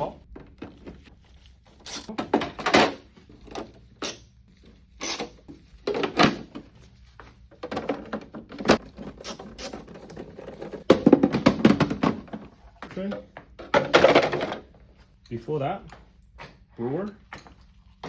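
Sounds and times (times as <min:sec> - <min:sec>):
plastic panels knocking and clicking: 0:07.5 - 0:09.2, 0:09.8 - 0:14.7.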